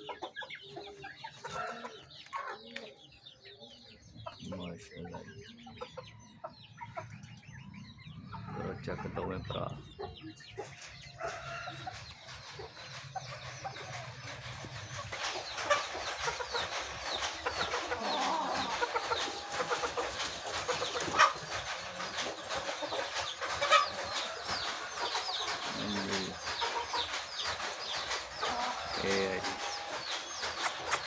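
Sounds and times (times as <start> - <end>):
chickens clucking and peeping: 0.0 - 31.0
sharp clicks: 29.1 - 31.0.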